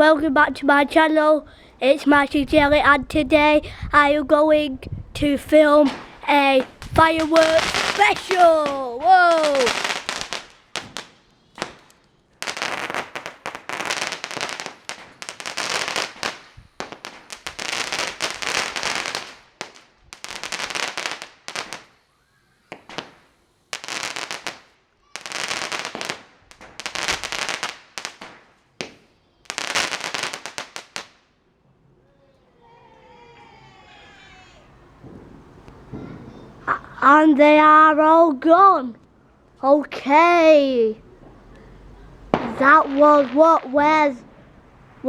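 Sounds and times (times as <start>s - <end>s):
fireworks crackling bursts: 5.2s - 31.4s, 34.4s - 37.9s, 40.1s - 45.0s.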